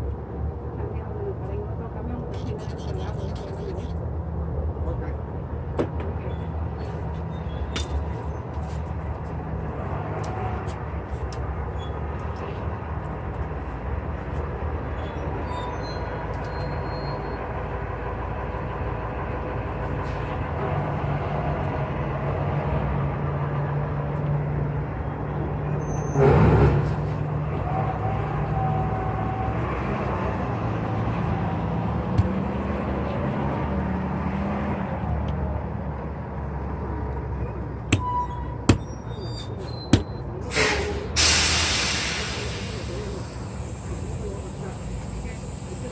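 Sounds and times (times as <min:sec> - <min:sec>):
large vehicle engine idling: 0:36.6 - 0:45.9
burst of hissing air: 0:40.5 - 0:43.9.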